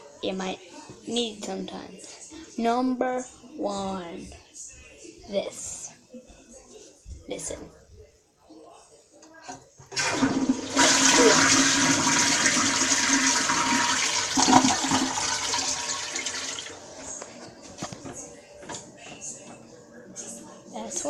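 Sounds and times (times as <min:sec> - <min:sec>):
toilet flush click: 0:09.9 - 0:16.7
toilet water rushing: 0:10.0 - 0:17.1.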